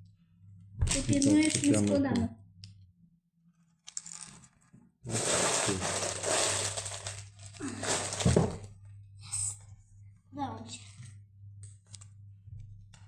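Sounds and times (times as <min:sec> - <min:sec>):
plastic pieces rattling: 0:00.8 - 0:02.0, 0:05.1 - 0:08.7
plastic packaging crinkling: 0:05.1 - 0:08.7.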